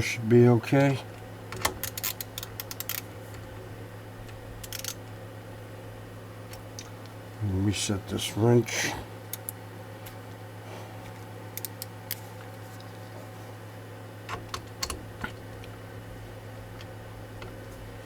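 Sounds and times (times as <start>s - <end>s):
steady low hum: 0.0s - 18.0s
wrench clicks and taps: 1.6s - 3.4s, 4.6s - 5.0s, 11.6s - 12.2s.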